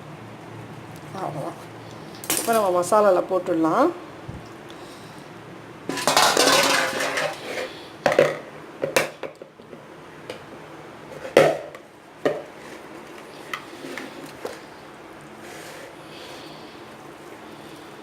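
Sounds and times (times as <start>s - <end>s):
dishes clattering and rustling: 5.9s - 9.4s.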